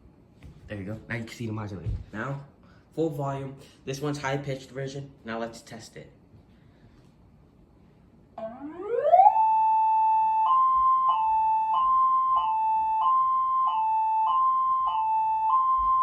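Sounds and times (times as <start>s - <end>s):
electronic siren two-tone: 8.4s - 16.0s.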